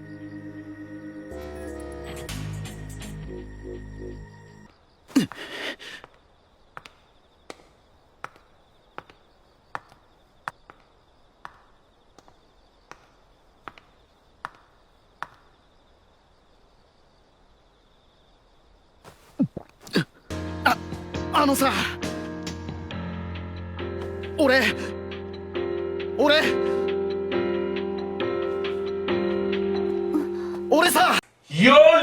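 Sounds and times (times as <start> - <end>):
sharp taps: 6.0 - 15.6.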